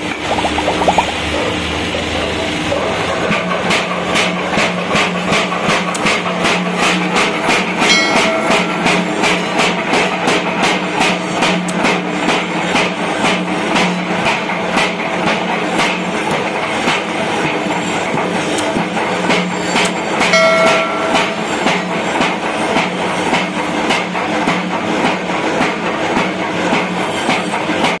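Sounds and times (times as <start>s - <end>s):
ringing tone: 0.0s - 1.2s, 7.9s - 9.9s, 20.3s - 22.2s.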